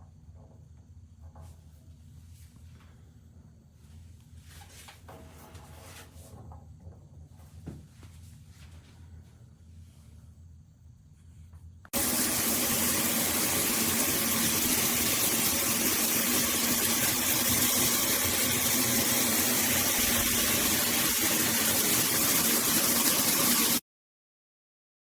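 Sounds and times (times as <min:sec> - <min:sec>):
shower spray hissing: 0:12.0 - 0:23.8.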